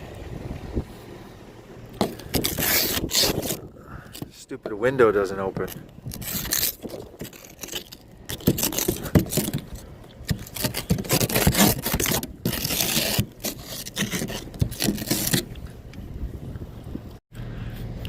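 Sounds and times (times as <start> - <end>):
ice scraped on car window: 2.0 - 4.4, 5.4 - 15.7.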